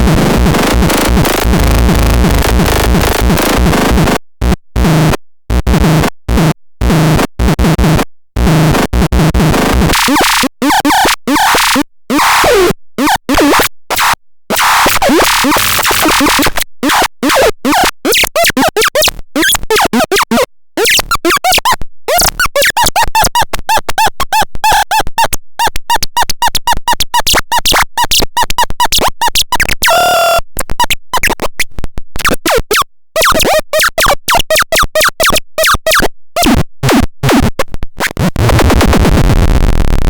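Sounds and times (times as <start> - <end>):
buzzy synth tone: 0.1 - 4.0
glitchy synthesizer tones: 8.4 - 13.7, 14.6 - 21.6, 32.2 - 40.0.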